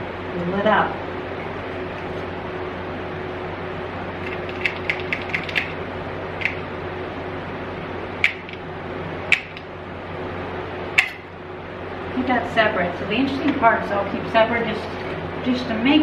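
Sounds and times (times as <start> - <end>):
steady background hum: 0.0 - 16.0
small metal parts clicking: 4.3 - 5.8.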